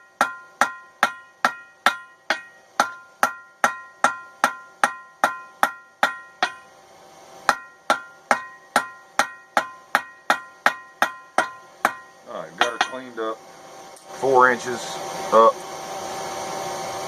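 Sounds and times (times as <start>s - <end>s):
hammer striking metal on anvil: 0.0s - 6.7s, 7.4s - 13.2s.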